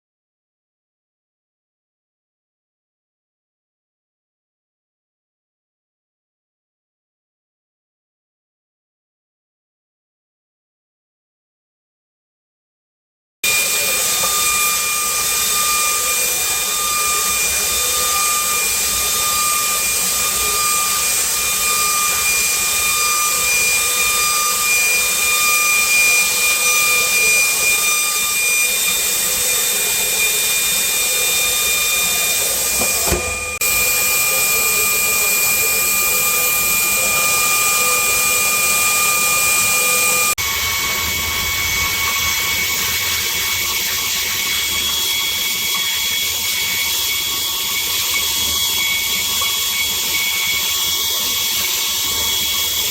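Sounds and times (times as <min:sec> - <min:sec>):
router spindle whine: 0:13.4 - 0:52.9
cold air hissing: 0:13.5 - 0:44.7.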